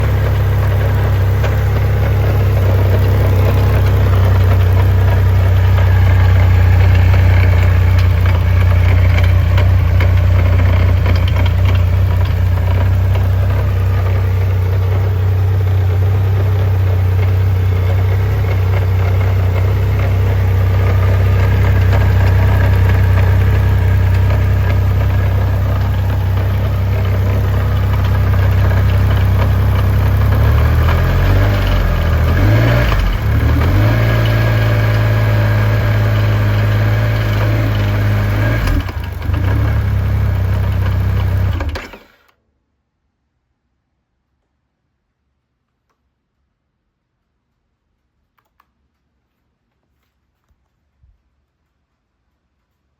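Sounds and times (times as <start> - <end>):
motorcycle engine idling: 0.0 - 42.3.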